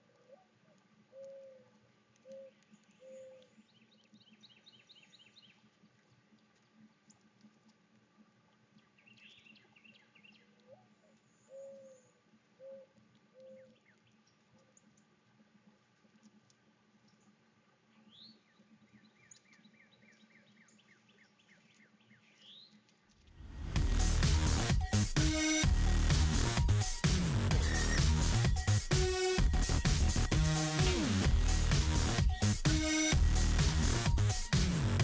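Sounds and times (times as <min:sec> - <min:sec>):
low hooting bird call: 0:00.1 - 0:03.6, 0:10.4 - 0:13.8
small birds chirping: 0:00.2 - 0:05.7, 0:08.7 - 0:15.0, 0:17.0 - 0:23.2.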